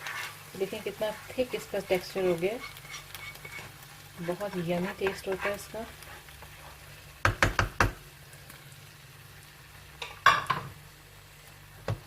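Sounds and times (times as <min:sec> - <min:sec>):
spoon knocking against a pan: 0:07.2 - 0:08.0.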